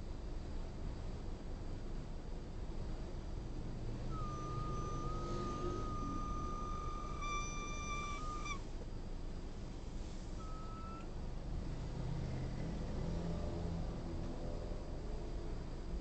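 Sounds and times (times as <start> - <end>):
car engine idling: 1.3 - 11.4
high whistle: 4.1 - 8.6, 10.4 - 11.1.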